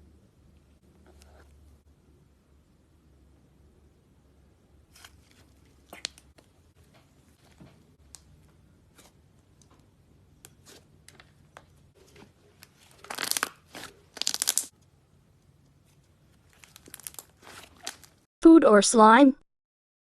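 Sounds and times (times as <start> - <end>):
slime clicking and crackling: 12.9 - 14.7, 16.5 - 18.2.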